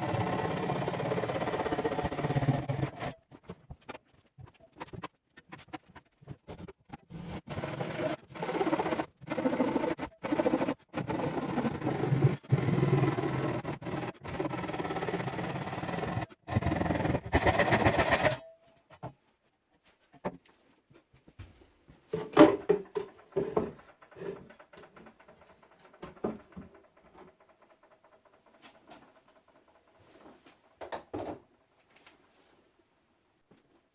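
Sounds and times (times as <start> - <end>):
hand saw cutting wood: 0.0 - 3.2, 7.2 - 18.4
wood knocking and scraping: 22.1 - 27.8.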